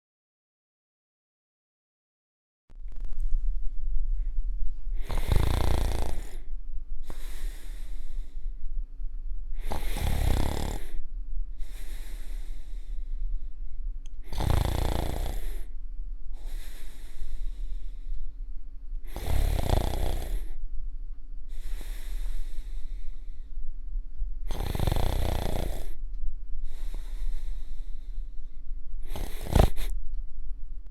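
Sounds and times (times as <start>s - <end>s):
steady low hum: 2.7s - 30.9s
person snoring: 5.0s - 6.5s, 9.6s - 11.0s, 14.3s - 15.7s, 19.0s - 20.6s, 24.5s - 26.0s, 29.0s - 29.9s
airy breath out: 7.0s - 8.6s, 11.6s - 13.5s, 16.4s - 18.2s, 21.5s - 23.6s, 26.6s - 29.9s.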